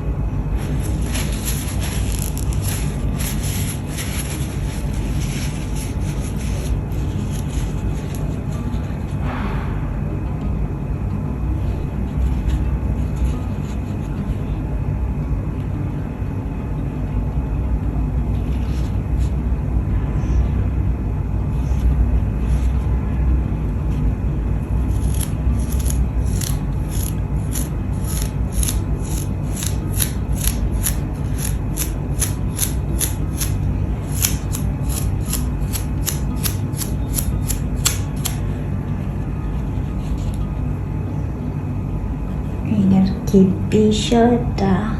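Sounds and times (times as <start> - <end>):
steady low hum: 0.0 - 44.9
paintbrush flicking paint: 24.9 - 38.4.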